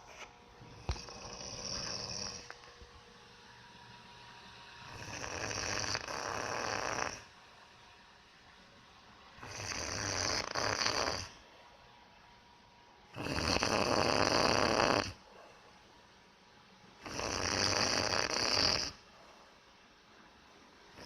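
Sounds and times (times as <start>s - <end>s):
person snoring: 0.7s - 2.5s, 4.9s - 7.3s, 9.4s - 11.4s, 13.1s - 15.2s, 17.0s - 19.0s.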